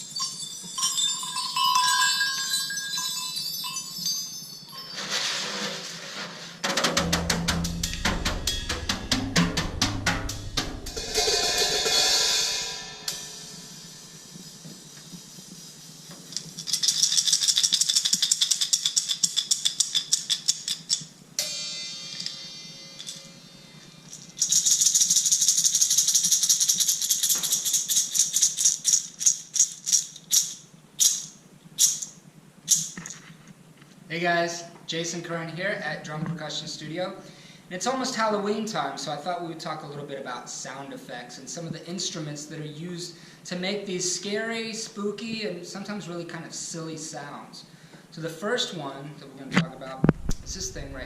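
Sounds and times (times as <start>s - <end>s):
fast rattling clicks: 16.2s - 21.1s.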